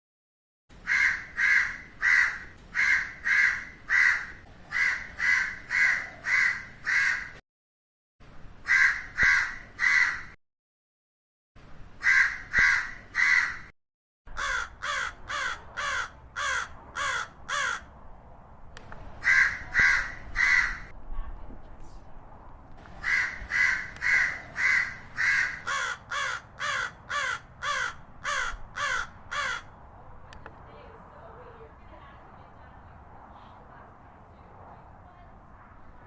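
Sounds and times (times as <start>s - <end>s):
crows cawing: 0.8s - 7.4s, 8.6s - 10.4s, 12.0s - 13.7s, 14.3s - 17.9s, 19.2s - 20.9s, 22.9s - 29.8s.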